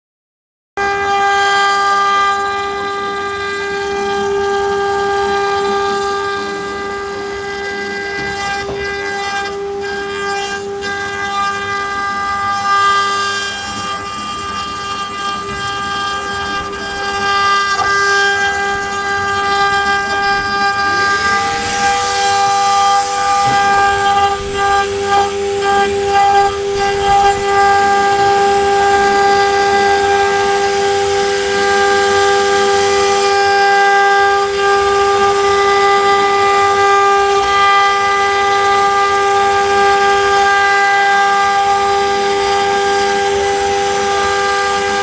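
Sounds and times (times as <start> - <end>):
cutter carving wood: 0.8 - 45.0
router spindle whining: 0.8 - 45.0
second rising whine: 11.7 - 33.4.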